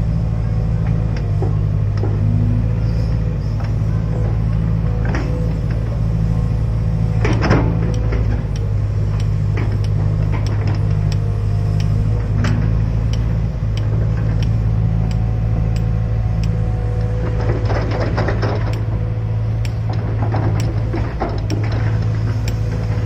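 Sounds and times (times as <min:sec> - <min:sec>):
excavator diesel engine running: 0:00.0 - 0:23.0
machine clicks and knocks: 0:07.1 - 0:19.0, 0:19.6 - 0:23.0.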